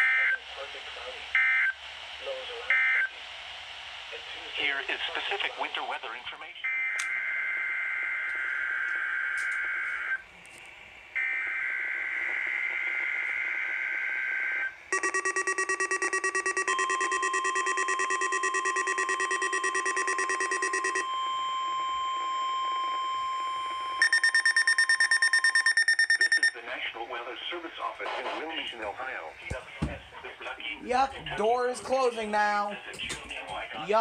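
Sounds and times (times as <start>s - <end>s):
buzzing two-tone digital data: 11.5s - 26.6s
rapid pulsing electronic beep: 14.9s - 21.3s, 24.0s - 26.6s
steady electronic tone: 14.9s - 26.5s
louder pulsing beep: 14.9s - 26.6s.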